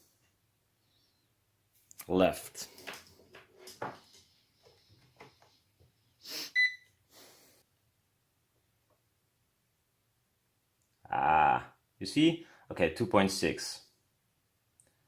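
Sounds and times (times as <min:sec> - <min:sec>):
multimeter beep: 0:06.6 - 0:06.9.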